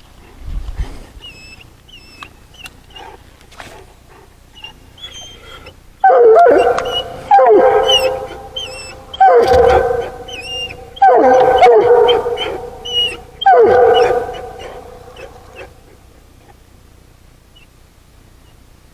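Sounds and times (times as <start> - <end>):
hound baying: 1.2 - 16.2.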